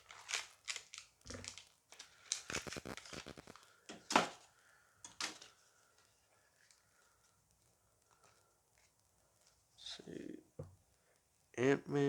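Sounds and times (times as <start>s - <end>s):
foil wrapper crinkling and tearing: 0.0s - 3.8s.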